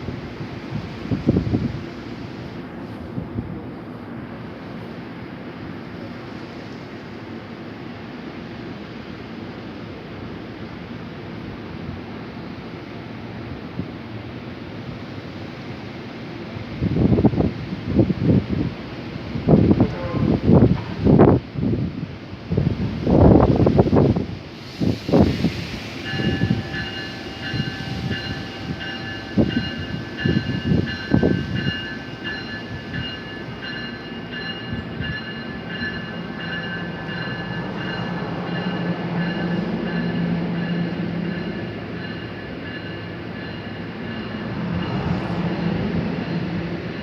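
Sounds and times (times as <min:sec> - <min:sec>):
wind buffeting microphone: 0:00.0 - 0:02.0, 0:16.7 - 0:39.0
electric train moving: 0:00.0 - 0:47.0
steady high-pitched tones: 0:25.6 - 0:47.0.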